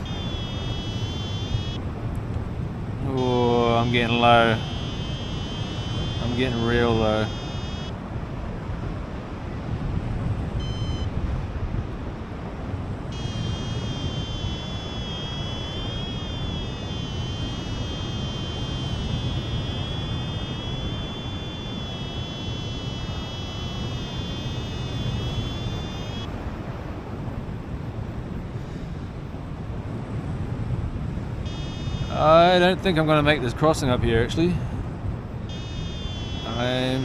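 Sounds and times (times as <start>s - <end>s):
variometer wavering tone: 0.0s - 1.8s, 3.1s - 8.0s, 10.6s - 11.2s, 13.1s - 26.3s, 31.4s - 32.5s, 35.5s - 37.0s
wind rushing over microphone: 0.0s - 37.0s.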